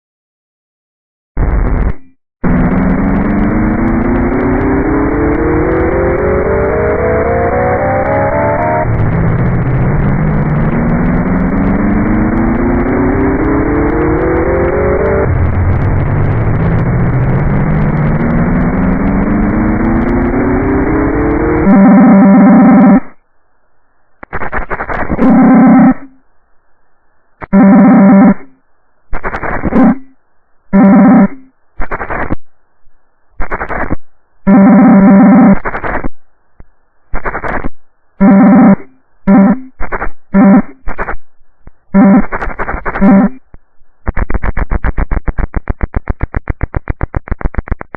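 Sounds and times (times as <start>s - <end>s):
distorted alert tones: 1.4s - 23.0s, 25.2s - 26.1s, 34.5s - 35.6s, 38.2s - 39.7s, 40.4s - 40.8s, 41.9s - 43.4s
harsh static: 1.4s - 23.3s, 24.2s - 26.2s, 27.4s - 32.5s, 33.3s - 47.9s
low steady buzzing tone: 2.4s - 23.0s.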